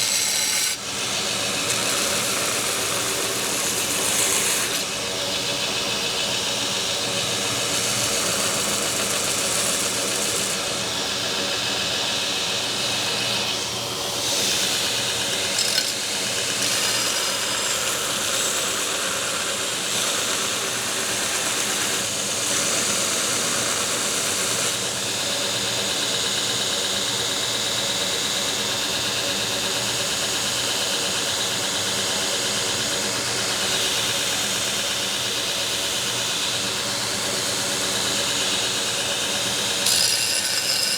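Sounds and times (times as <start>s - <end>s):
belt grinder motor hum: 6.7s - 24.9s, 32.5s - 40.9s
steel grinding on belt: 14.3s - 22.1s, 39.7s - 40.9s.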